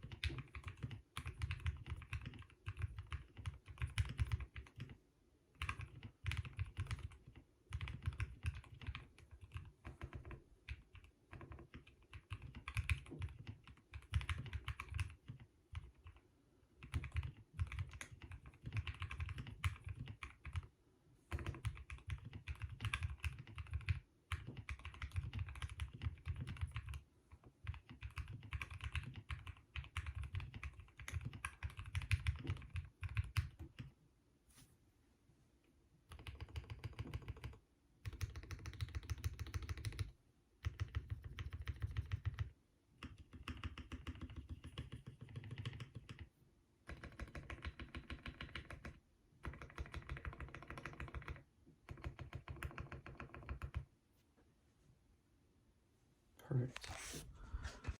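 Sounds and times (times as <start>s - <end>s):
mechanical keyboard typing: 0.0s - 5.0s, 5.6s - 16.2s, 16.8s - 20.7s, 21.3s - 33.9s, 36.1s - 46.3s, 46.9s - 53.9s.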